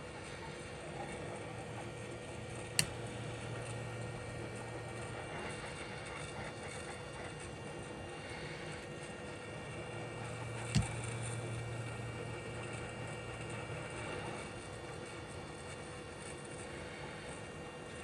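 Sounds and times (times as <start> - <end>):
sharp click: 2.8 - 3.1, 10.5 - 11.3
low hum: 9.7 - 14.4.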